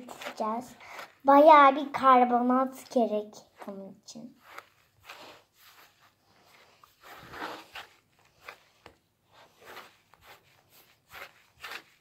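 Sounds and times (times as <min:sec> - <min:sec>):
slime squishing by hand: 0:03.6 - 0:12.0.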